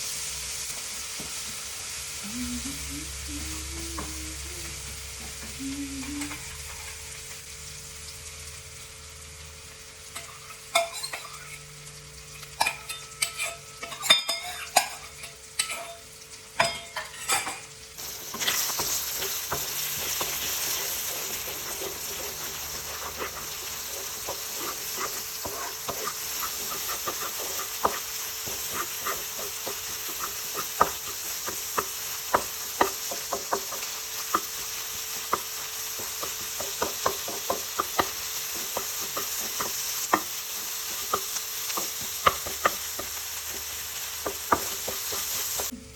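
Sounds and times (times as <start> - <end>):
food sizzling in a pan: 0.0 - 45.9
spatula scraping a pan: 10.2 - 11.6, 16.8 - 45.7.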